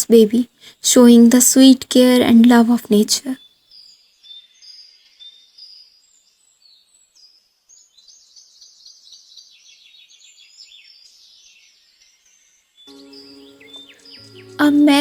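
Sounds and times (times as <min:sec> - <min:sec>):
birds chirping: 0:07.7 - 0:15.0.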